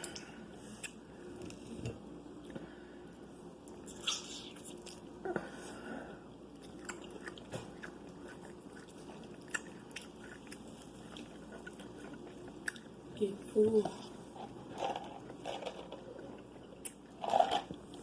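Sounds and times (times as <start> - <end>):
person chewing and biting food: 6.5 - 13.0.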